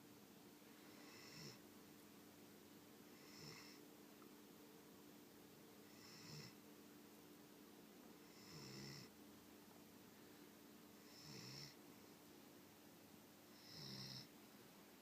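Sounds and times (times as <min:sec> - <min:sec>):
dog snoring: 0:00.9 - 0:01.6, 0:03.1 - 0:03.8, 0:05.8 - 0:06.6, 0:08.2 - 0:09.1, 0:11.0 - 0:11.8, 0:13.5 - 0:14.3.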